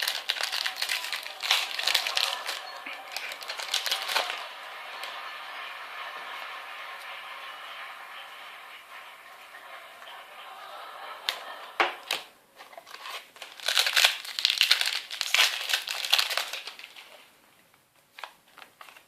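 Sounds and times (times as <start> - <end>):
foil wrapper tearing: 0.0 - 4.4, 12.7 - 17.1
foil wrapper crinkling: 0.0 - 4.5, 12.7 - 17.2.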